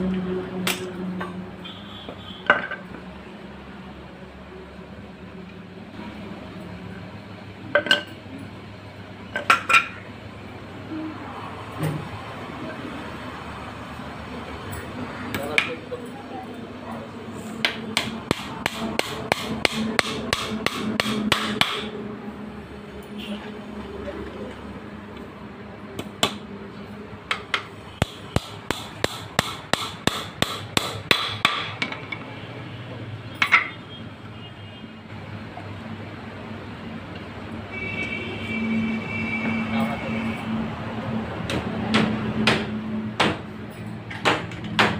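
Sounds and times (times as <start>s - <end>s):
hammer striking wood: 17.6s - 21.9s, 27.3s - 32.1s, 41.5s - 43.5s, 44.1s - 44.9s.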